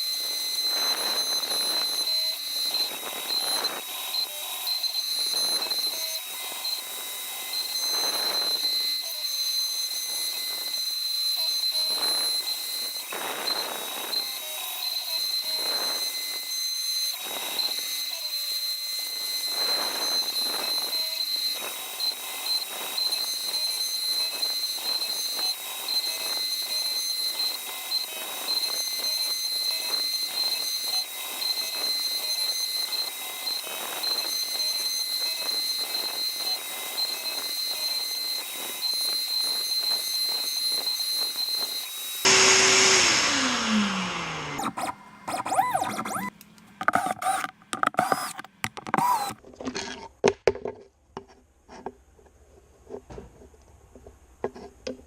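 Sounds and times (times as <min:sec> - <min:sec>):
router spindle whine: 0:00.0 - 0:49.4
loud falling tone: 0:42.3 - 0:46.3
bit chipping wood: 0:44.4 - 0:49.4.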